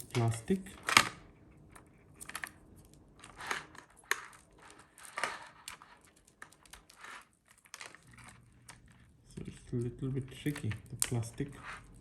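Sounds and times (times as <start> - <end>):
plastic film crinkling: 2.0 - 12.0.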